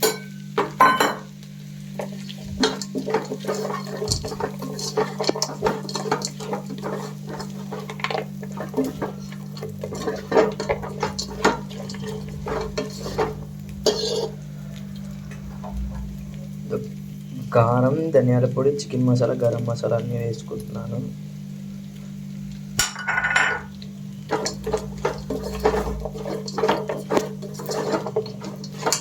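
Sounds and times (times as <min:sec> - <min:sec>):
metal utensil scraping a pan: 0:02.0 - 0:14.4, 0:22.8 - 0:29.0
steady low hum: 0:02.1 - 0:18.5.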